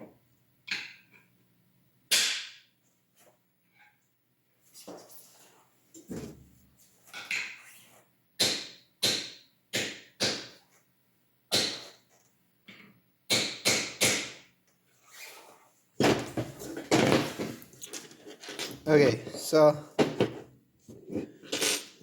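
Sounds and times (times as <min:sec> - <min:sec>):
scraping and handling: 0:15.0 - 0:22.0.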